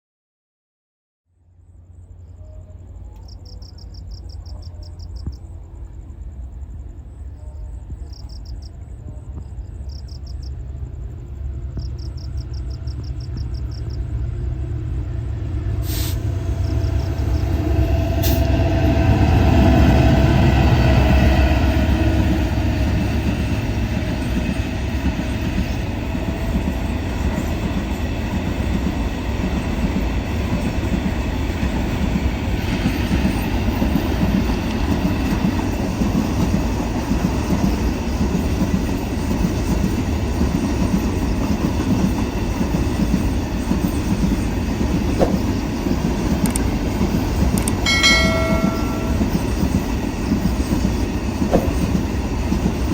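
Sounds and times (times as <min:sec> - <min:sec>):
train rumbling past: 0:01.5 - 0:52.9
wheels clacking over rail joints: 0:22.2 - 0:52.9.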